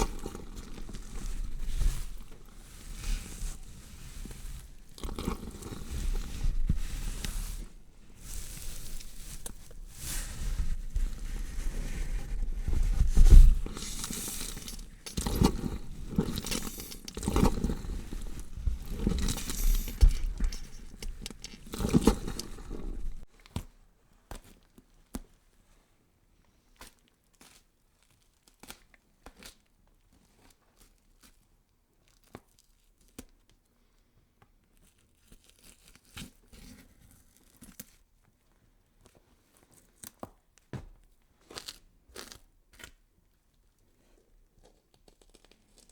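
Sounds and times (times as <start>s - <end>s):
faint clicks and crunches: 0.0s - 23.3s
loud tearing and crunching: 13.2s - 23.2s.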